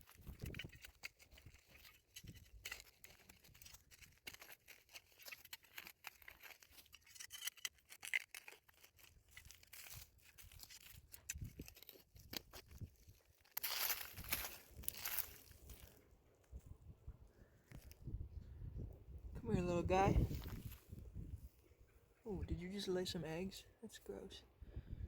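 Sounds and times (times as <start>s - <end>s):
shovel scraping soil: 0.0s - 16.0s.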